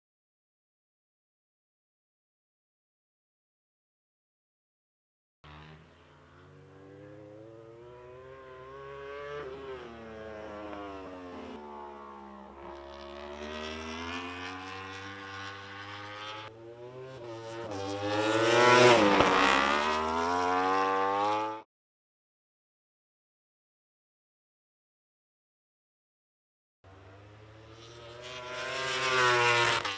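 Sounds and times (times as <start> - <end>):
motorcycle engine revving: 5.4 - 21.6, 26.9 - 29.9.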